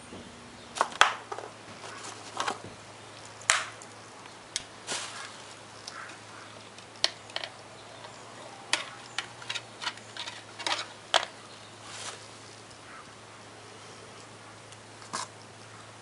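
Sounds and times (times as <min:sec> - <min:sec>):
small parts clicking and tapping: 0:05.8 - 0:11.4.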